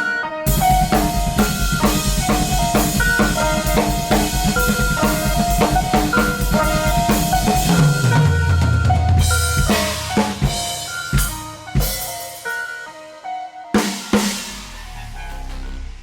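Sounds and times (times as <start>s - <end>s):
repeated melodic notes: 0.0s - 13.2s
drum kit groove: 0.4s - 13.0s.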